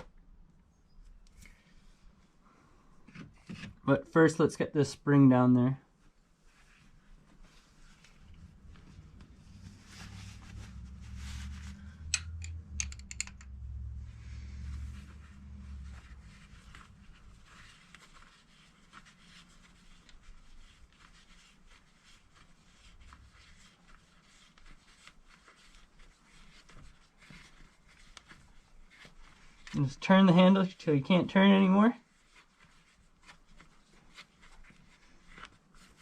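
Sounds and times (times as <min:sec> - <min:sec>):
low hum: 0:08.3 - 0:17.4
metal hand tools clicking: 0:12.1 - 0:13.5.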